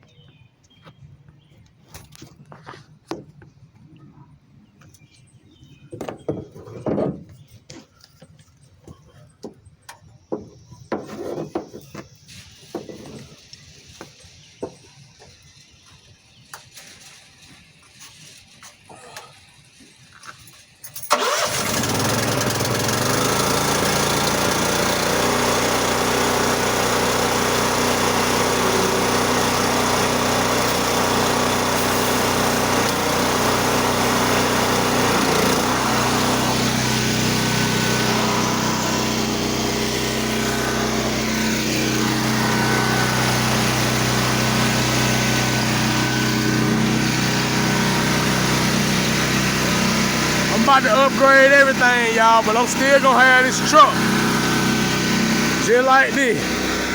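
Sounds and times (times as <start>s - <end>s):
pressure washer engine running: 21.1s - 56.9s.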